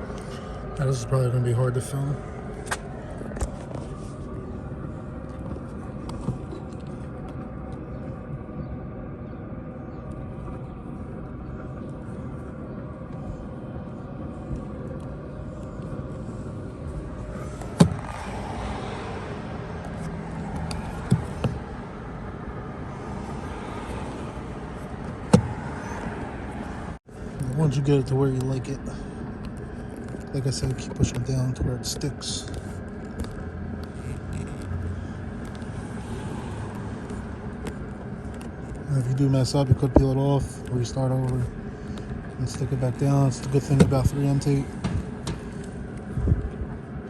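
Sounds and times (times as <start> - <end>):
car cabin hum: 0.0 - 47.0
clicks on dashboard trim: 19.8 - 21.6, 25.0 - 26.1, 43.7 - 44.2.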